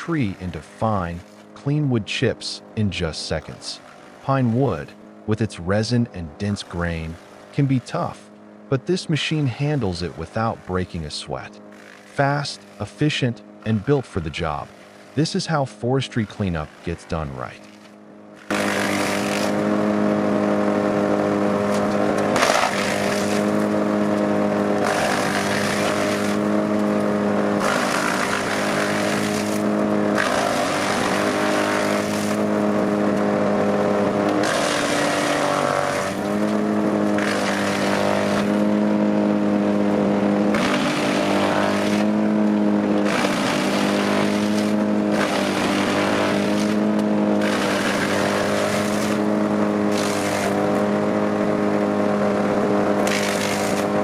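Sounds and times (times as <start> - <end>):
wood chipper engine running: 0.0 - 54.0
wood crunching in chipper: 9.6 - 13.1, 16.2 - 19.9, 21.6 - 33.3, 33.9 - 54.0.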